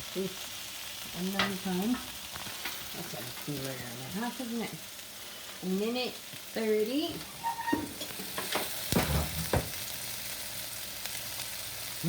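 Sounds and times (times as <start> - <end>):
chicken sizzling in a pan: 0.0 - 12.0
sharp knocks: 7.9 - 9.8.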